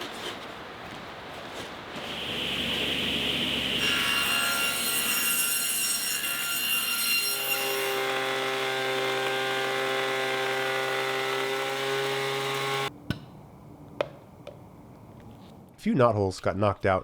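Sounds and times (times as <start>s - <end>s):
machine running hum: 2.0s - 4.0s
power tool cutting whine: 2.2s - 12.9s.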